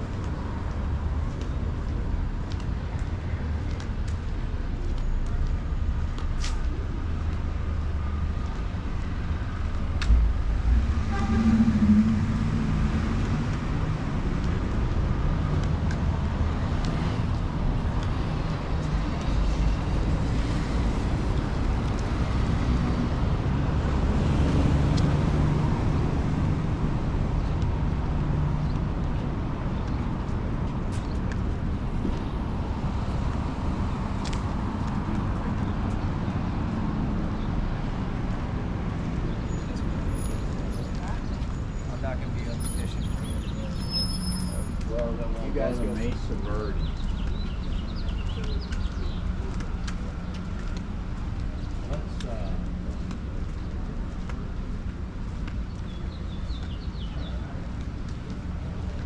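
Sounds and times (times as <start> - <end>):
vehicles driving past: 0.0 - 59.0.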